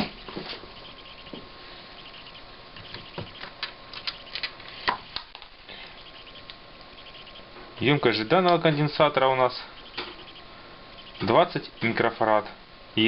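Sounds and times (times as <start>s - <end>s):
faint steady hiss: 0.0s - 13.0s
small objects clicking and tapping: 2.8s - 5.5s.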